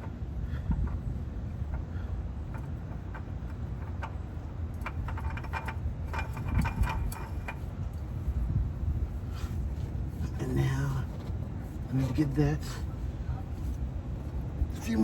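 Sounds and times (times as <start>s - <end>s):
steady low rumble: 0.0s - 15.0s
oil filter clicks and scrapes: 1.7s - 8.1s.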